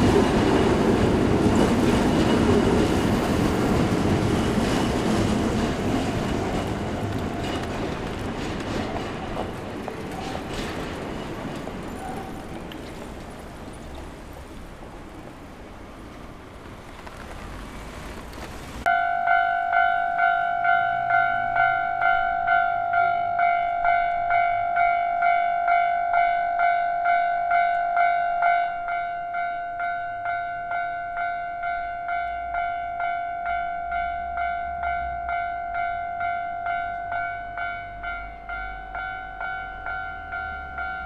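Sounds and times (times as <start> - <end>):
level crossing bell clanging: 18.9 - 41.0.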